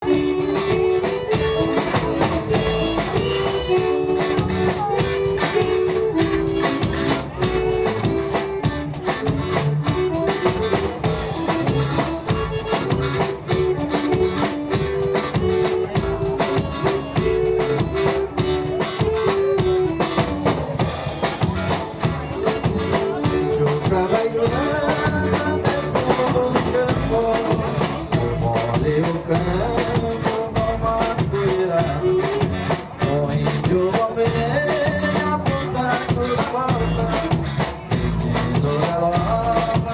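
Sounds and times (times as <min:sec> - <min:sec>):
accordion melody: 0:00.0 - 0:39.9
drums: 0:00.0 - 0:39.9
guitar: 0:00.0 - 0:39.9.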